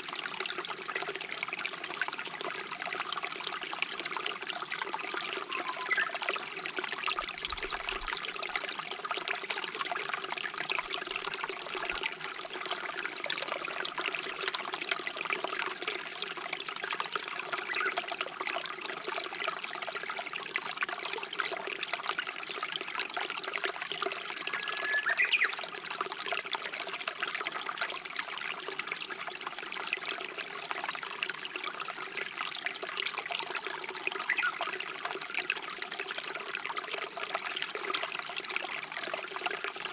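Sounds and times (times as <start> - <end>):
stream water trickling: 0.0 - 39.9
short high whistle: 24.4 - 25.5.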